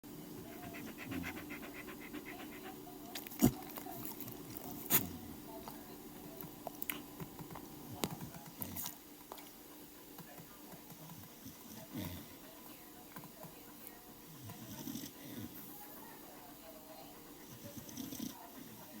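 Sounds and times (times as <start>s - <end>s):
dog snoring: 17.4s - 18.7s.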